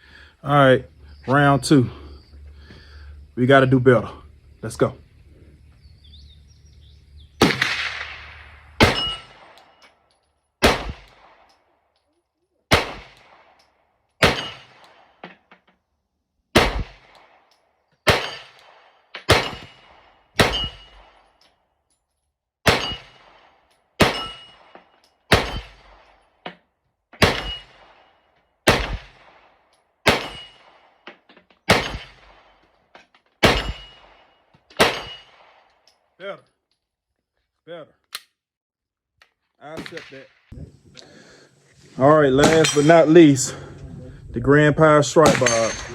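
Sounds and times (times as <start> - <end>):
pistol shots: 7.4 - 9.8, 10.6 - 11.6, 12.7 - 13.6, 14.2 - 15.2, 16.5 - 21.3, 22.6 - 26.2, 27.2 - 31.0, 31.7 - 32.6, 33.4 - 35.7, 45.2 - 45.9
metallic ring: 8.9 - 10.4, 18.2 - 21.5, 24.1 - 25.8, 42.4 - 43.4.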